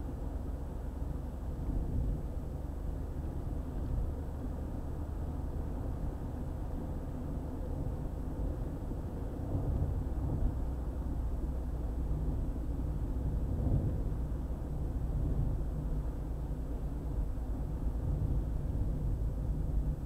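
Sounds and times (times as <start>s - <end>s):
car driving on highway: 0.0s - 20.0s.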